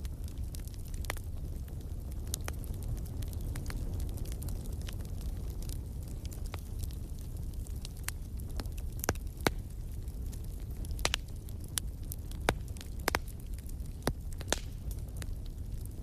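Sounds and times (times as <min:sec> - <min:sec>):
fire pops and snaps: 0:00.0 - 0:16.0
rumble of flames: 0:00.0 - 0:16.0.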